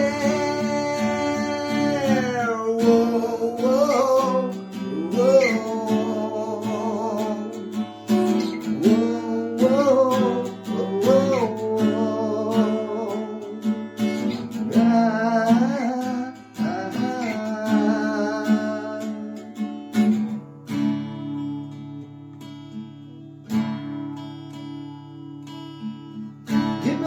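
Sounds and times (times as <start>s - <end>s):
wordless vocal melody: 0.0s - 19.6s
strummed acoustic guitar: 0.0s - 27.0s.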